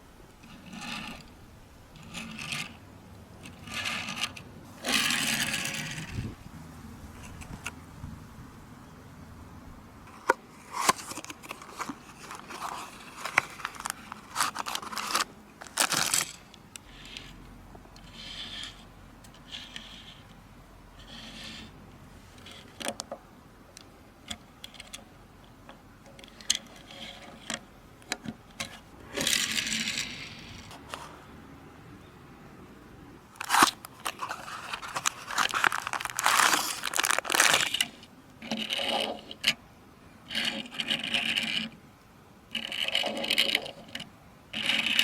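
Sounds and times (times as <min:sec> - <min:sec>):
toy cars scraping: 0:00.4 - 0:02.8, 0:03.4 - 0:06.4, 0:10.1 - 0:20.4, 0:21.0 - 0:23.0, 0:26.2 - 0:27.6, 0:28.6 - 0:31.3, 0:33.4 - 0:39.6, 0:40.3 - 0:41.8, 0:42.5 - 0:45.0
packaging rustling: 0:10.2 - 0:16.5, 0:33.4 - 0:37.9.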